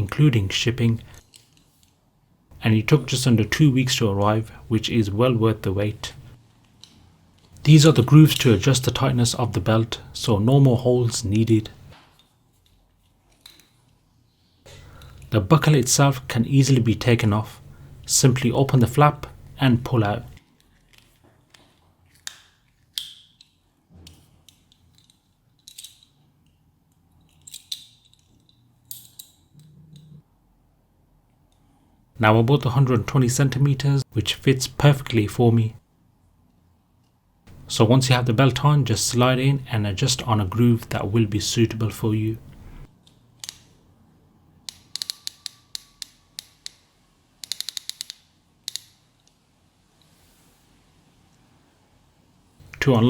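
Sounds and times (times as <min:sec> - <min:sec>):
belt buckle clicking: 0:27.2 - 0:30.1, 0:44.6 - 0:49.4.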